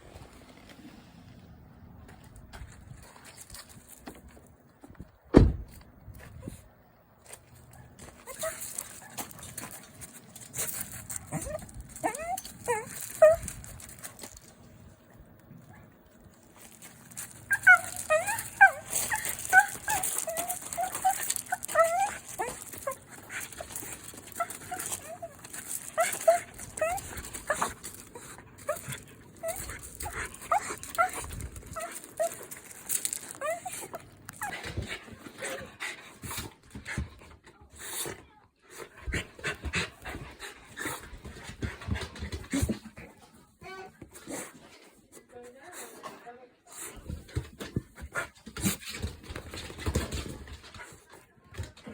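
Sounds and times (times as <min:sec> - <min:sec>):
dog whining: 0:11.2 - 0:13.8, 0:17.4 - 0:32.6, 0:33.2 - 0:34.6.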